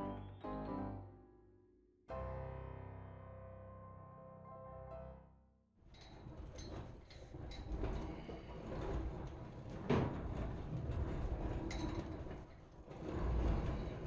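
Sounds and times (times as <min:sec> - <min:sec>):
heavy object rumbling and rattling: 0:05.9 - 0:14.0.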